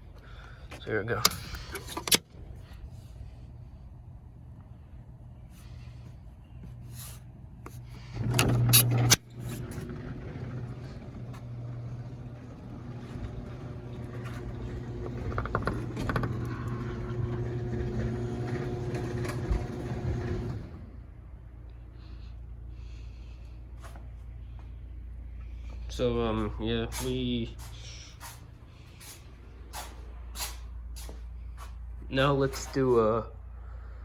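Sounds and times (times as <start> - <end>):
garage door motor running: 7.7 - 23.6
garage door clatter: 7.9 - 21.0.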